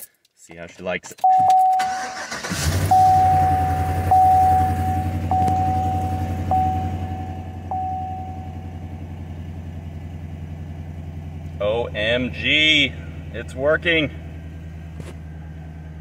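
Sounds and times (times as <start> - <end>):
dashboard warning chime: 1.2 - 9.2
truck engine idling: 1.6 - 16.0.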